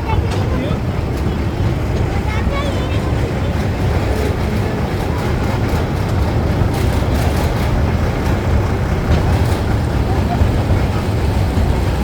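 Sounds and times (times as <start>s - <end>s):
toy train rumbling on track: 0.0s - 12.0s
faint rattling clicks: 3.8s - 11.5s.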